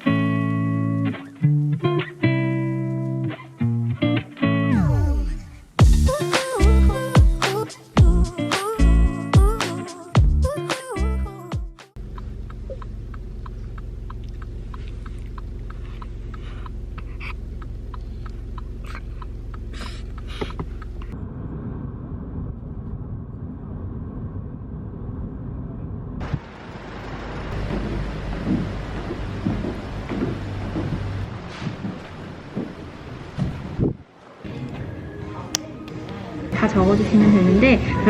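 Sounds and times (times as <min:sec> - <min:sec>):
low rumble: 0:12.0 - 0:34.1
light ticks: 0:12.1 - 0:21.2.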